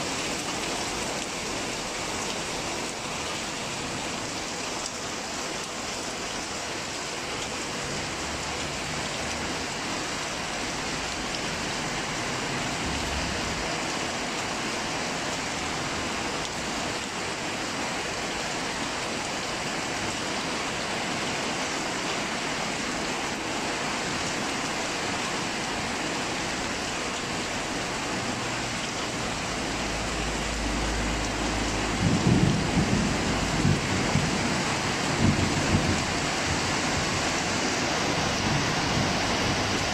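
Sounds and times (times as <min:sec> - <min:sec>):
heavy rain falling: 0:00.0 - 0:39.9
thunder rumbling: 0:31.9 - 0:39.9.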